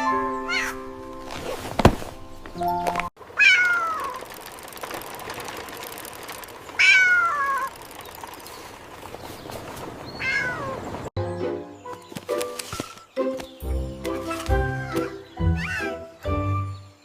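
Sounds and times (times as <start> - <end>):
cat meowing: 0.5 - 0.8, 3.4 - 4.1, 10.2 - 10.8, 14.8 - 15.9.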